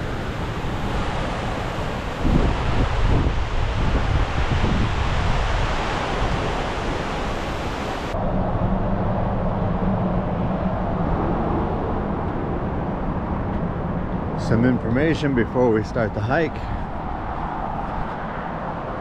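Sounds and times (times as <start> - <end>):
outdoor rushing noise: 0.0 - 19.0.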